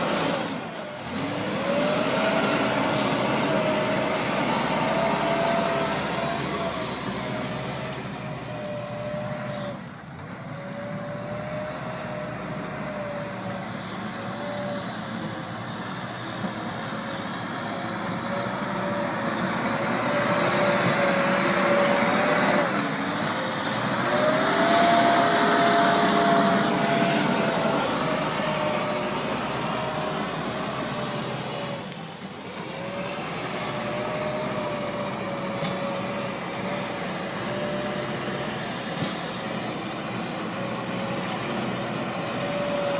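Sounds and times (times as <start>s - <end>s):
backhoe diesel engine and hydraulics: 0.0s - 42.9s
hydraulic whine: 0.0s - 42.9s.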